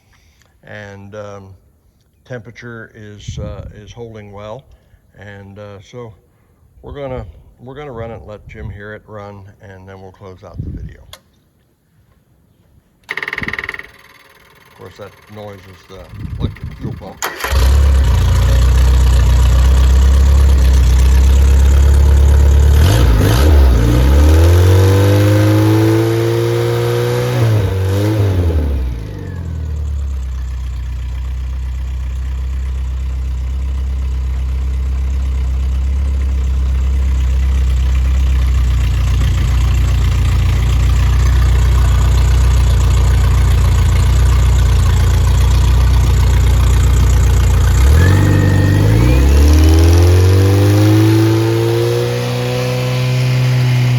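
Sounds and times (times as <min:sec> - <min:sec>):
car engine revving and idling: 0:17.4 - 0:53.9.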